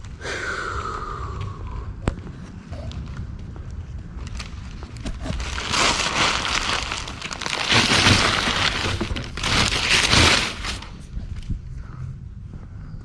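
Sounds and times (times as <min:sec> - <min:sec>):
paper and tape crinkling: 0:04.2 - 0:11.1.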